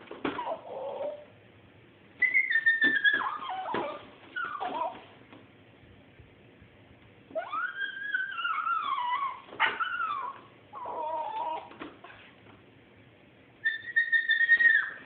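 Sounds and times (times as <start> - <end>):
dog whining: 0.2 - 1.3, 2.2 - 5.2, 7.3 - 12.3, 13.6 - 15.0.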